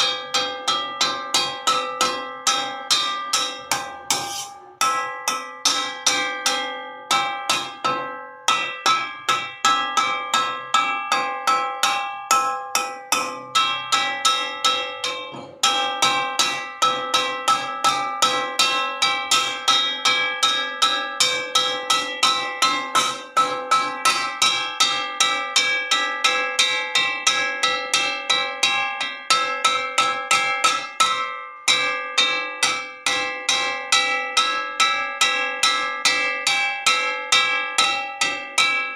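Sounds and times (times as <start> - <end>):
metal wok struck ringing: 0.0 - 28.8.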